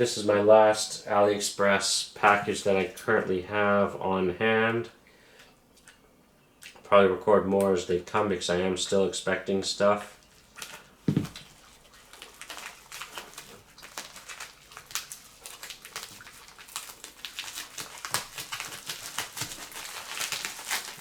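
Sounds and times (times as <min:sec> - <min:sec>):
plastic packaging crinkling: 0:10.1 - 0:21.0.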